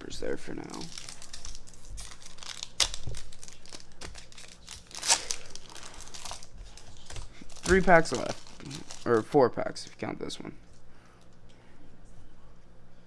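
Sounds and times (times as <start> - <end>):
wrapper crinkling and tearing: 0.5 - 9.4.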